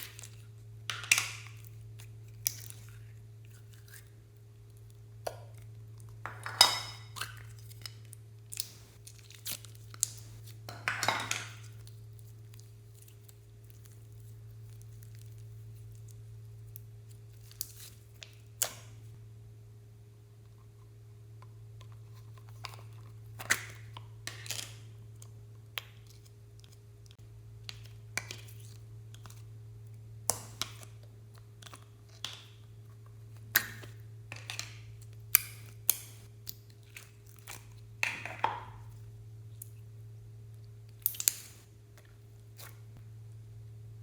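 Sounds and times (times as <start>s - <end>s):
low hum: 11.6s - 31.7s, 38.7s - 44.0s.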